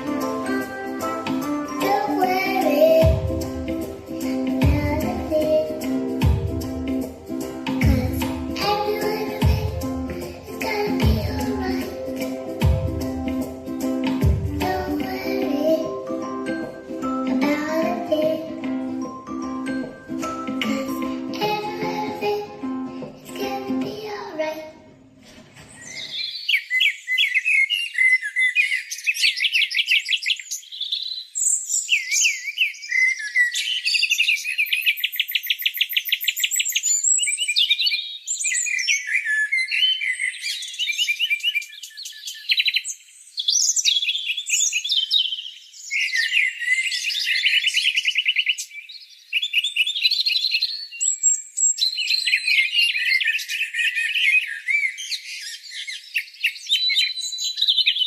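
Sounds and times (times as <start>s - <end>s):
songbirds chirping and trilling: 0.0s - 58.0s.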